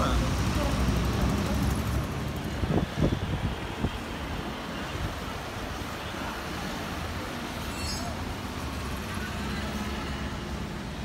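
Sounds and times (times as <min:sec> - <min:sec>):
strong storm wind: 0:01.0 - 0:06.0.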